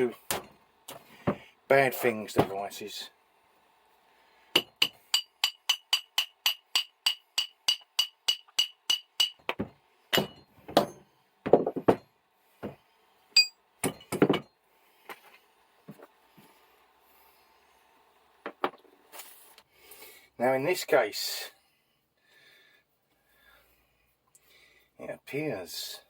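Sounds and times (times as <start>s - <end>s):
hammer tapping on steel: 4.6s - 12.8s.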